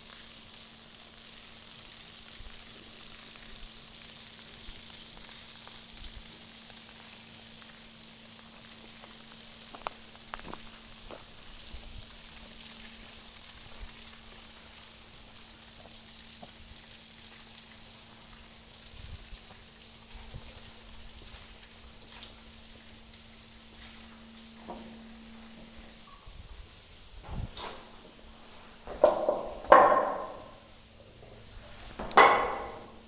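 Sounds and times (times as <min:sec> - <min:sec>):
waterfall hiss: 0:00.0 - 0:26.0.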